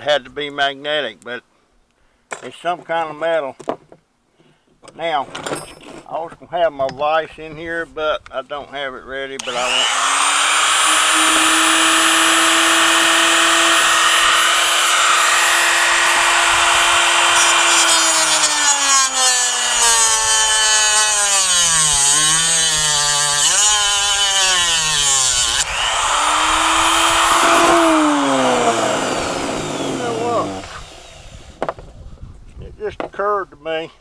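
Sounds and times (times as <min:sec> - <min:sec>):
power tool whining: 0:09.4 - 0:31.9.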